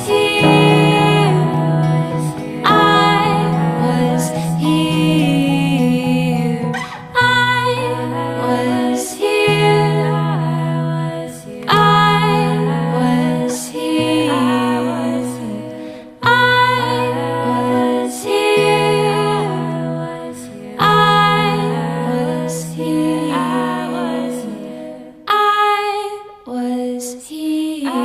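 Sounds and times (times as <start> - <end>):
gentle lullaby-like music: 0.0 - 10.8.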